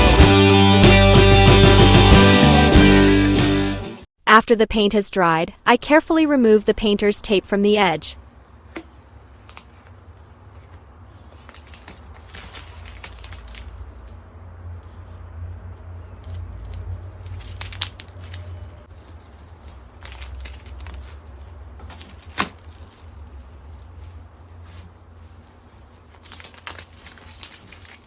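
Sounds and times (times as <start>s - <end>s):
tape being peeled off: 8.3s - 15.1s, 16.0s - 28.0s.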